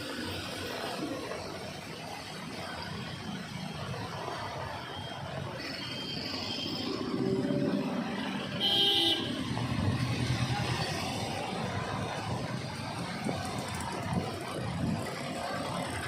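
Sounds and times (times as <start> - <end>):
street traffic passing: 0.0 - 16.0
vehicle horn honking: 8.6 - 9.4.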